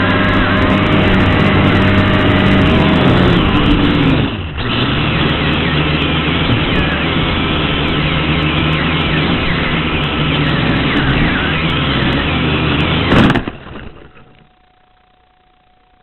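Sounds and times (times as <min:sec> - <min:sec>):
quadcopter propellers whirring: 0:00.0 - 0:13.9.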